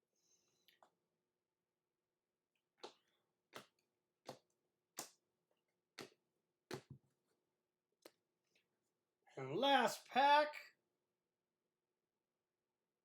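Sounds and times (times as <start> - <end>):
cards snapping while flipped: 3.6 - 5.2.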